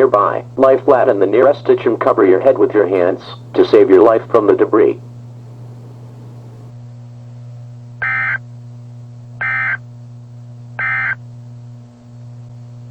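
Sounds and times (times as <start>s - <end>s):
steady low hum: 0.0s - 12.9s.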